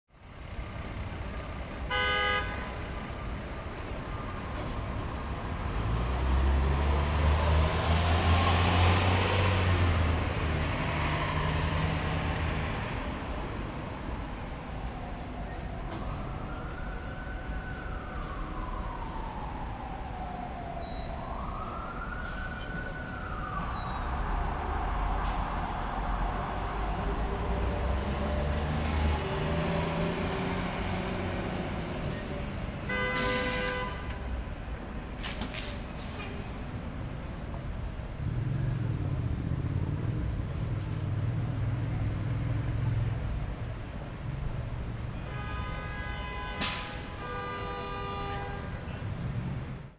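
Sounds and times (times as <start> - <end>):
street traffic noise: 0.1 - 49.9
car horn toot: 1.9 - 2.7, 32.9 - 34.1, 45.3 - 48.8
heavy vehicle engine rumble: 21.2 - 45.0.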